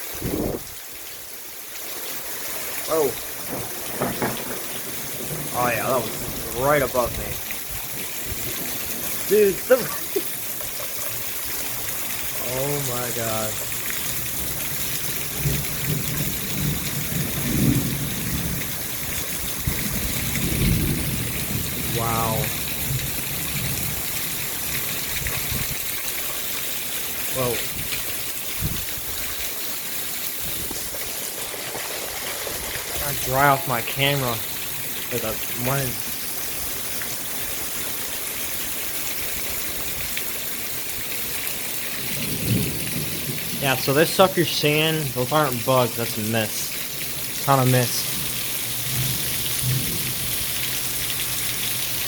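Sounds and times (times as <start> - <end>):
heavy rain pouring: 0.0 - 52.0
low thunder rumble: 0.1 - 0.8, 3.2 - 10.1, 14.0 - 25.9, 42.0 - 45.2, 48.0 - 51.1.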